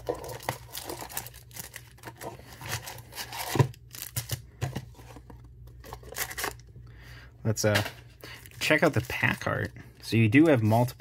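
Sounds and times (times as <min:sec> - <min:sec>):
wrappers crinkling and rustling: 0:00.0 - 0:04.4.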